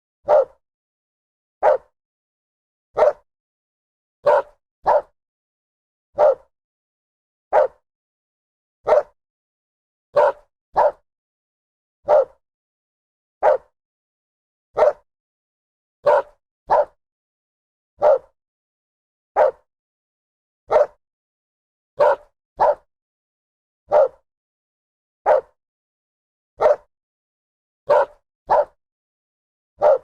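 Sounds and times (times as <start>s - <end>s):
dog barking: 0.2s - 0.6s, 1.6s - 2.0s, 3.0s - 3.3s, 4.2s - 5.2s, 6.2s - 6.5s, 7.5s - 7.8s, 8.8s - 9.2s, 10.1s - 11.0s, 12.0s - 12.4s, 13.4s - 13.7s, 14.8s - 15.1s, 16.0s - 17.0s, 18.0s - 18.4s, 19.4s - 19.7s, 20.7s - 21.0s, 22.0s - 22.9s, 23.9s - 24.2s, 25.2s - 25.6s, 26.6s - 26.9s, 27.9s - 28.8s, 29.8s - 30.0s.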